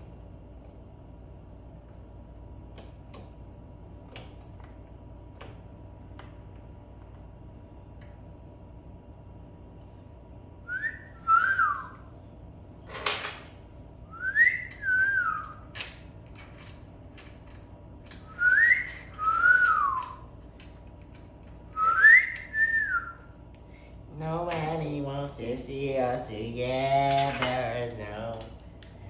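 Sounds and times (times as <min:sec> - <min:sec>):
man whistling a tune: 0:10.7 - 0:12.0, 0:14.1 - 0:15.6, 0:18.3 - 0:20.3, 0:21.8 - 0:23.3.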